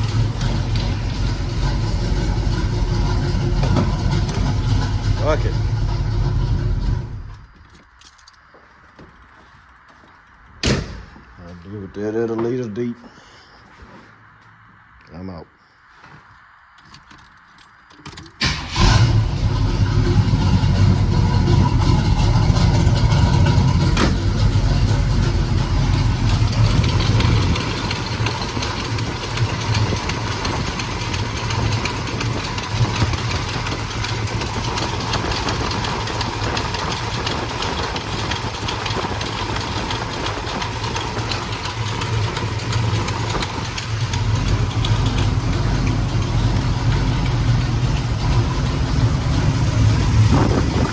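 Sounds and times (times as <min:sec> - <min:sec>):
car engine idling: 0:00.0 - 0:07.6, 0:18.4 - 0:50.9.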